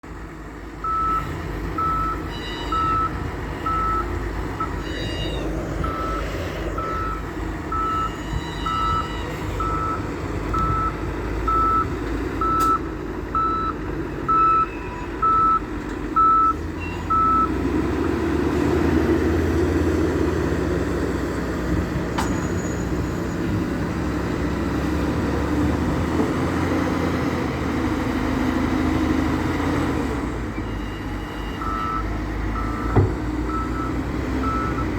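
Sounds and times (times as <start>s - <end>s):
diesel engine running: 0.0s - 34.9s
reversing alarm beeping: 0.8s - 12.8s, 13.4s - 17.6s, 30.6s - 34.9s.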